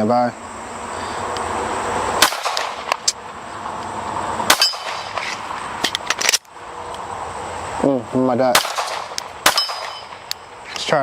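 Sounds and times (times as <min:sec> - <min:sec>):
pistol shots: 0:02.2 - 0:03.1, 0:04.5 - 0:05.3, 0:08.5 - 0:10.3
steel target clang: 0:04.5 - 0:05.2, 0:08.6 - 0:10.3.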